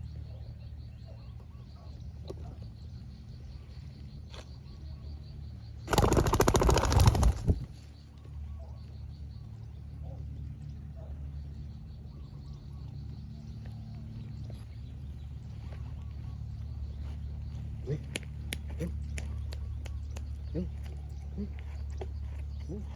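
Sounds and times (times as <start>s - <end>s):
doves cooing faintly: 5.9s - 7.8s
rapid wing flapping: 5.9s - 7.8s.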